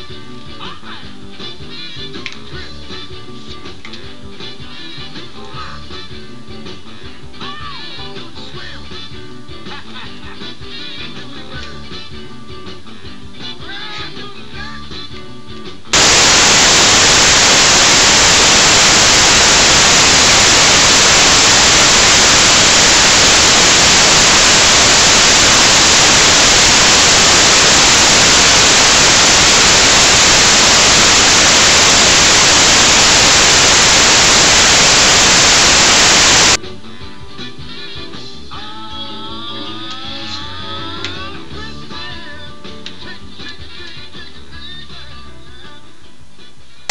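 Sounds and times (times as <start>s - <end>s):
loud static hiss: 16.0s - 36.7s.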